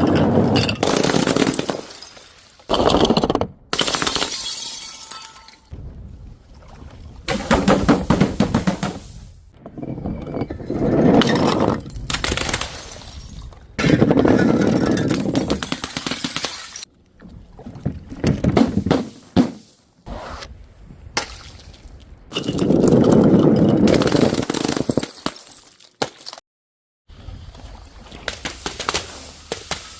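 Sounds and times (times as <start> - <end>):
glass breaking and crunching: 3.8 - 5.7, 23.9 - 26.4.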